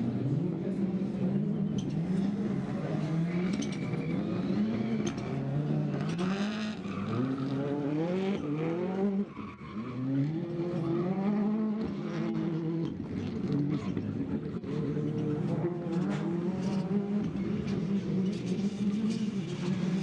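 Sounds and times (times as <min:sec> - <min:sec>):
rally car engine revving: 0:00.0 - 0:20.0
tyre squeals: 0:03.0 - 0:11.0.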